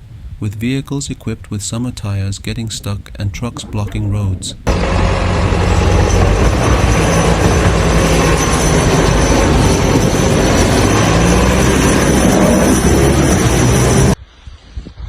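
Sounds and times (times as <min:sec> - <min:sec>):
vehicle engine hum: 0:03.0 - 0:14.2.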